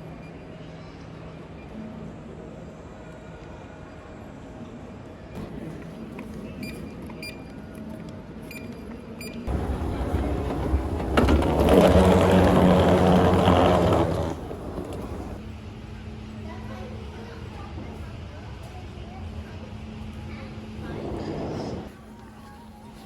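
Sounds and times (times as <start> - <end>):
engine rumble: 9.5 - 15.5.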